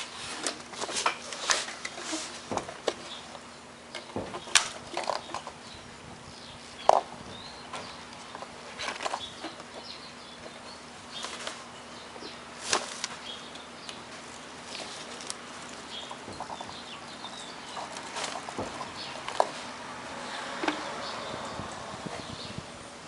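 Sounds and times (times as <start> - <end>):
parts clicking and knocking: 0.4 - 5.6, 14.7 - 19.7, 20.3 - 21.0.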